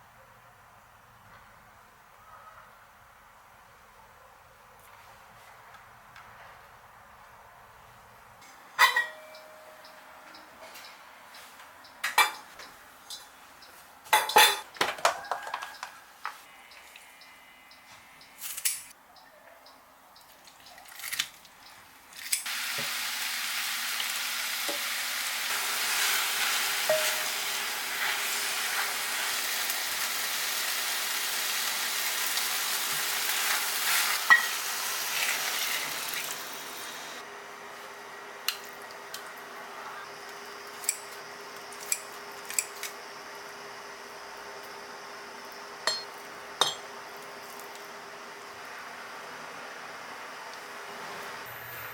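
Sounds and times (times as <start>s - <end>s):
utensils and dishes clinking: 8.8s - 9.6s, 14.2s - 15.8s, 26.8s - 27.5s, 45.9s - 46.9s
food sizzling in a frying pan: 22.5s - 37.2s.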